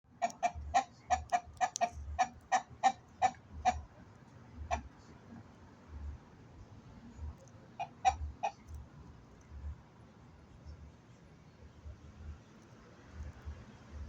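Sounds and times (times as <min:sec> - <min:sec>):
rooster clucking: 0:00.1 - 0:03.9, 0:04.6 - 0:04.9, 0:07.7 - 0:08.8.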